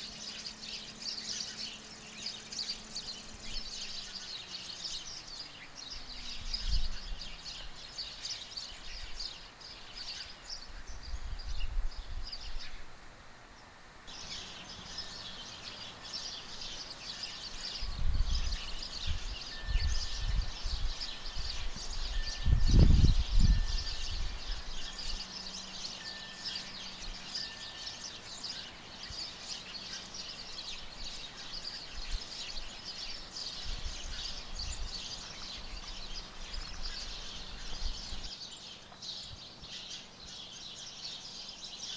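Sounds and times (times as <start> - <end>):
small birds chirping: 0.0 - 41.9
wind rumble on microphone: 5.0 - 8.0, 10.5 - 13.0, 17.6 - 25.3, 30.6 - 38.3.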